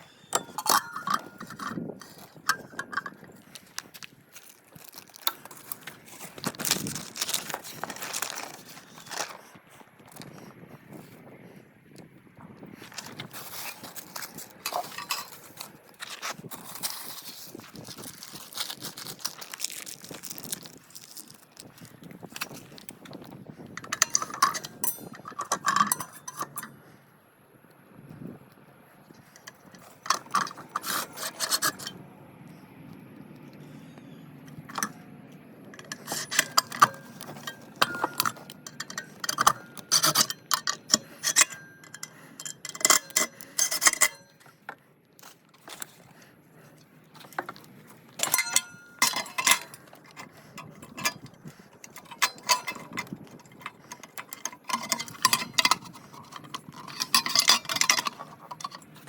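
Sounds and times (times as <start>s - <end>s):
metal tools clinking and scraping: 0.0s - 11.2s, 12.8s - 26.9s, 29.2s - 32.0s, 33.6s - 59.0s.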